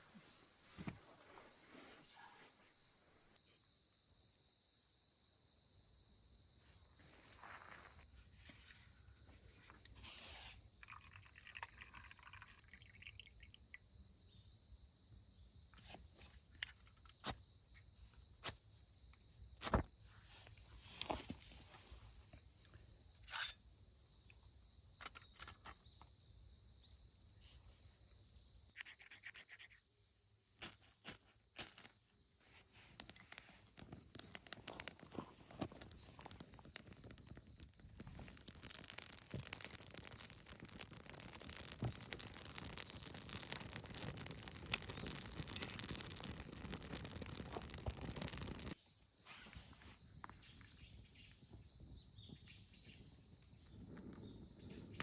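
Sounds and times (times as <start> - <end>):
insects trilling: 0.0 - 3.4, 10.6 - 16.0, 31.2 - 49.1
scratching rustling noise: 32.4 - 50.0.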